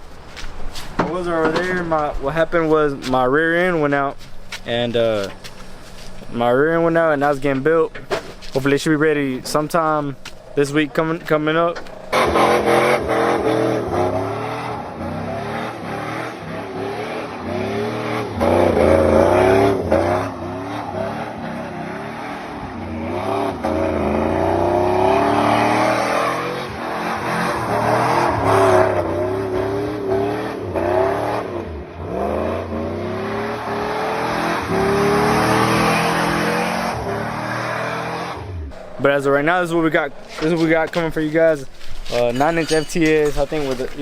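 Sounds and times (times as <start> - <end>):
vehicle engine revving: 11.8 - 40.9.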